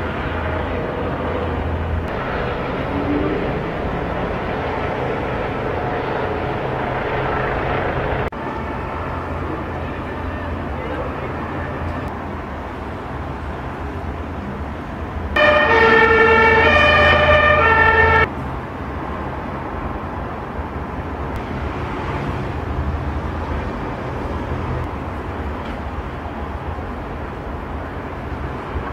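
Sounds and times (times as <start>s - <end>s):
low hum and rumbling: 0.0s - 8.3s
two-tone horn: 8.3s - 12.1s, 15.4s - 18.3s.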